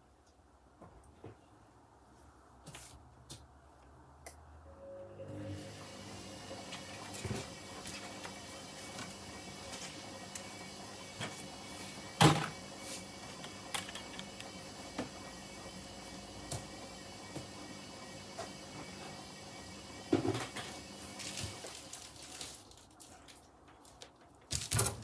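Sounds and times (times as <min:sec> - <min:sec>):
washing machine running: 0:04.8 - 0:22.5
washing machine thump: 0:12.2 - 0:12.6.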